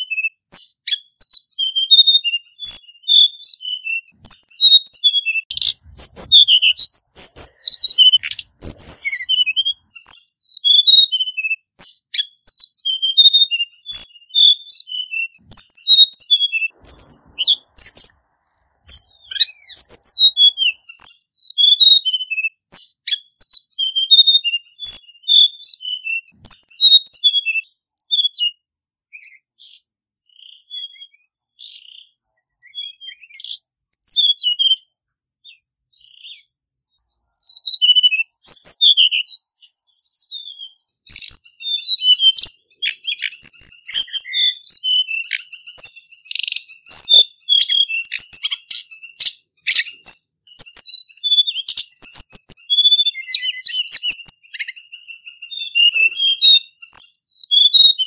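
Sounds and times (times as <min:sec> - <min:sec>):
bird singing whistled notes: 0:00.0 - 0:58.0.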